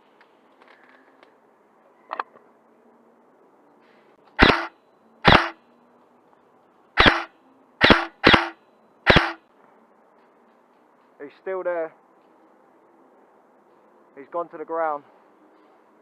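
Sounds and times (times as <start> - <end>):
airsoft rifle shots: 4.4 - 4.7, 5.3 - 5.6, 7.0 - 9.4
gearbox whir: 4.4 - 4.7, 5.3 - 5.6, 7.0 - 9.4.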